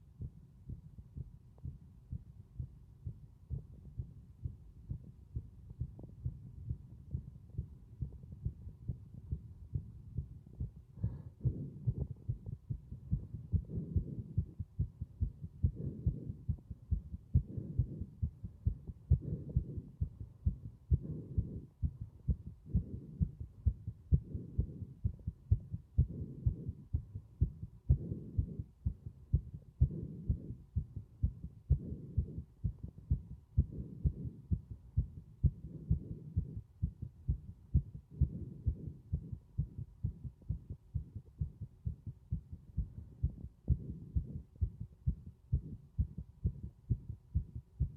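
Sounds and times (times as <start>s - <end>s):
heartbeat thumps: 0.0s - 47.9s
breathing: 10.9s - 12.1s, 19.2s - 19.9s.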